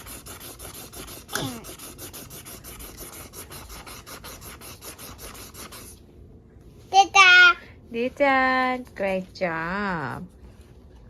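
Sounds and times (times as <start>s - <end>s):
crayon scribbling on paper: 0.0s - 6.0s.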